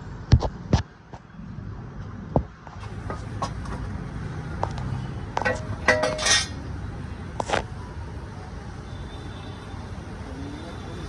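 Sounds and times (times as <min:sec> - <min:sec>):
metal tools clinking together: 0:05.4 - 0:06.6.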